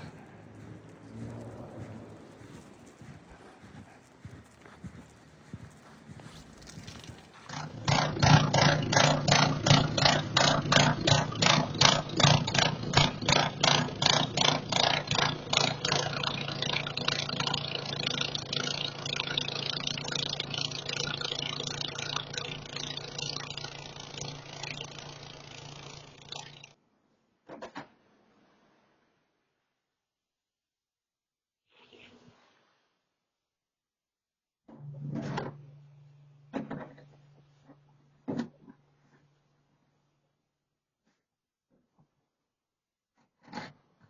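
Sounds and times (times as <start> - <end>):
snowblower engine running: 0.0 - 26.7, 36.5 - 39.2.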